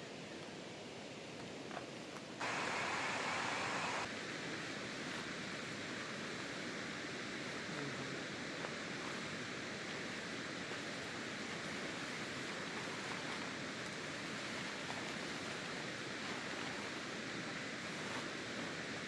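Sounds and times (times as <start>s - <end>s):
waterfall rushing: 2.4s - 4.1s.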